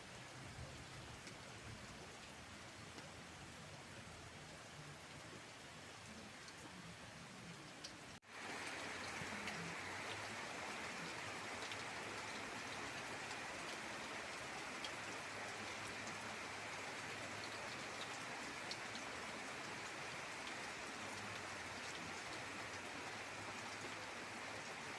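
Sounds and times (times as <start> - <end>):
raindrop ticks: 0.0 - 24.8
faint steady rain: 0.0 - 24.9.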